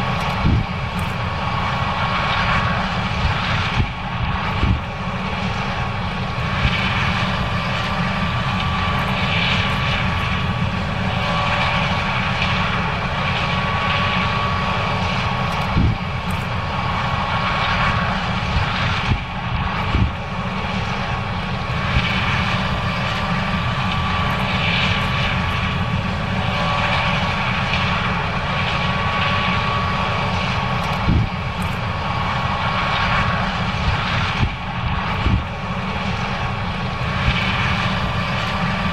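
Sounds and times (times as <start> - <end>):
combine harvester drone: 0.0 - 38.9
faint steady machine whine: 0.0 - 38.9.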